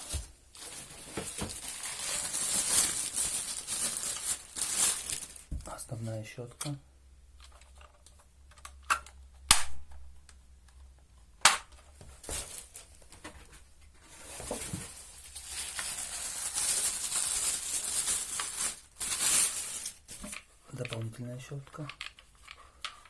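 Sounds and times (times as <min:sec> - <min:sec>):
plastic packaging rustling: 0:00.0 - 0:05.8, 0:12.0 - 0:22.7
plastic parts clicking and knocking: 0:07.4 - 0:12.1, 0:20.1 - 0:23.0.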